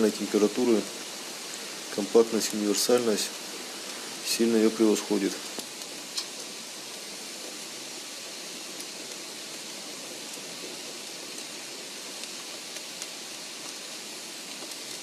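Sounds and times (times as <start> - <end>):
steady hiss: 0.0 - 15.0
faint ticks: 5.6 - 7.0.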